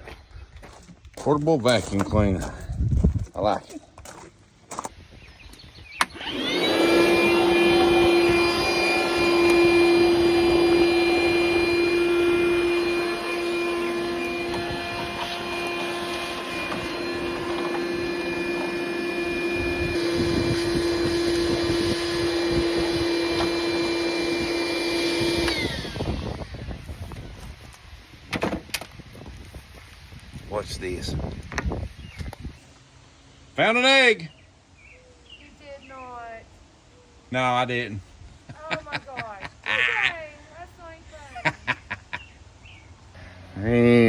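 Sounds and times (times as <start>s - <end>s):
vacuum motor winding down: 6.0s - 26.8s
vacuum cleaner whining: 6.0s - 27.4s.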